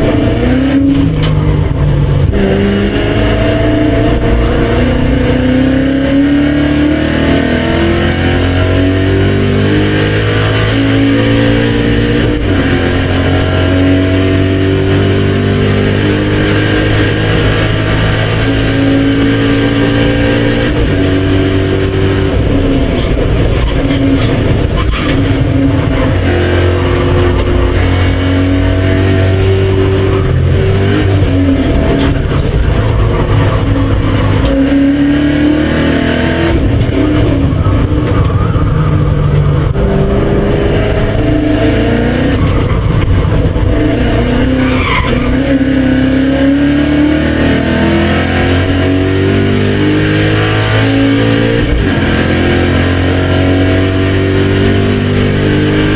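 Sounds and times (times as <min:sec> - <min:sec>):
car engine revving: 0:00.0 - 0:55.9
tyre squeal: 0:22.9 - 0:26.8, 0:44.4 - 0:45.6.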